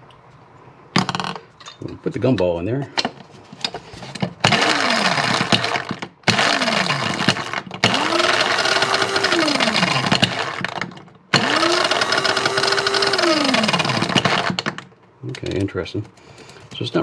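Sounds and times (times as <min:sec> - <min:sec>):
coffee grinder motor whirring: 0:04.5 - 0:10.8, 0:11.4 - 0:14.6.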